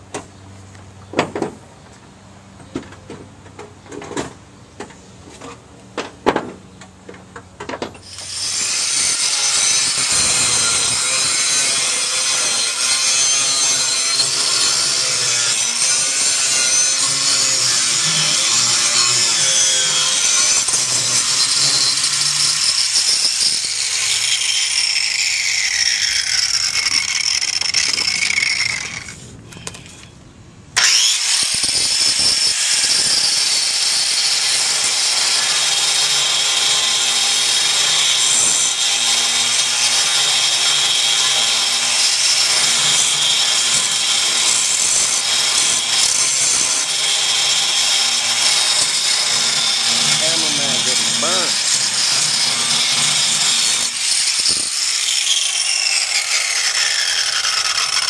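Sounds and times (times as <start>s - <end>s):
angle grinder grinding steel: 8.0s - 30.1s, 30.8s - 58.0s.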